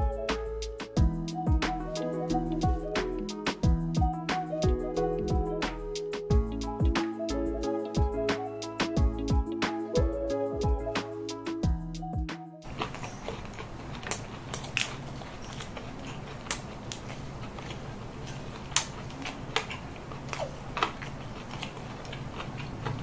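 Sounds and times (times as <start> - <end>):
person chewing crunchy food: 12.6 - 23.0.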